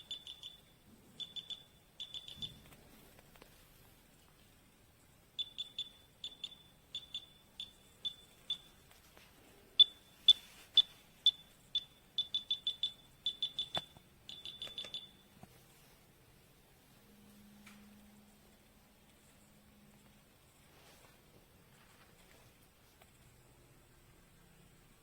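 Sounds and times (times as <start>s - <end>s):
high-pitched device beeps: 0.0s - 2.7s, 5.4s - 8.8s, 9.8s - 15.4s.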